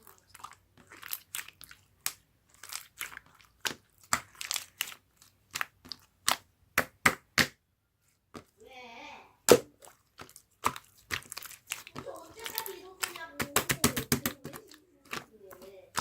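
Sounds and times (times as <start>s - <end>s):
crunching and crackling: 0.0s - 6.5s, 9.8s - 16.0s.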